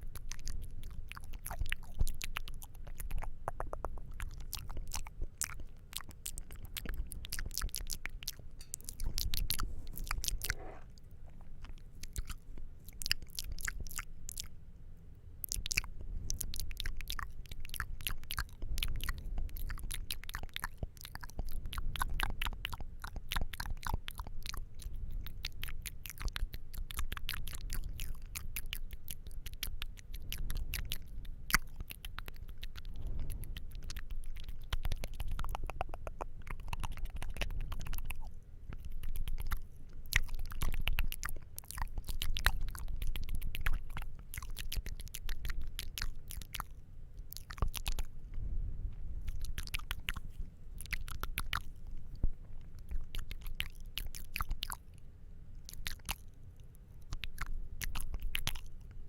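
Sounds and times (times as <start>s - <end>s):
wet mouth clicks and smacks: 0.2s - 10.5s, 11.6s - 14.5s, 15.5s - 48.1s, 49.3s - 54.8s, 55.6s - 56.3s, 57.0s - 59.0s.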